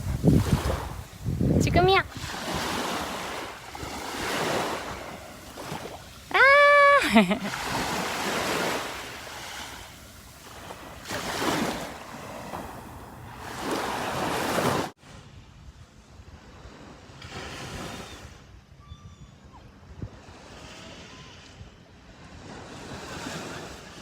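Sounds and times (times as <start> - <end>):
sea waves breaking on beach: 0.0 - 15.3, 16.4 - 18.4, 20.2 - 24.0
wind: 0.0 - 24.0.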